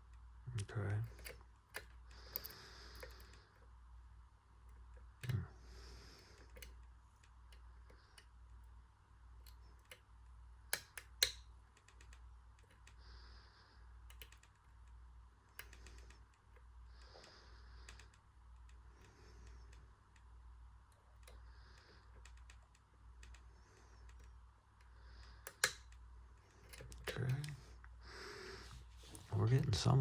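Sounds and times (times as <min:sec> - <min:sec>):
lock picks clicking: 0:01.0 - 0:03.4, 0:10.7 - 0:13.0, 0:14.1 - 0:16.7, 0:25.2 - 0:27.6.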